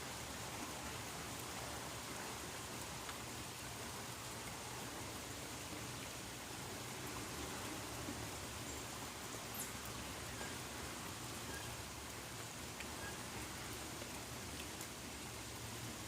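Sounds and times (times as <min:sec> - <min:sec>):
steady rain falling: 0:00.0 - 0:16.0
faint drip ticks: 0:02.5 - 0:03.3, 0:11.5 - 0:15.7.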